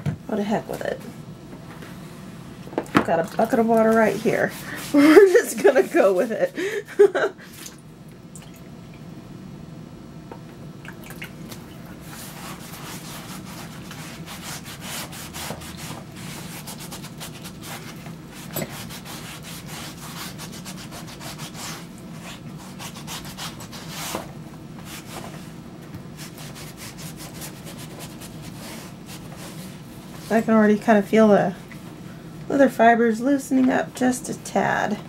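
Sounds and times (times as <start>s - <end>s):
hands scrubbing wet leather: 3.4s - 6.5s, 11.5s - 24.2s.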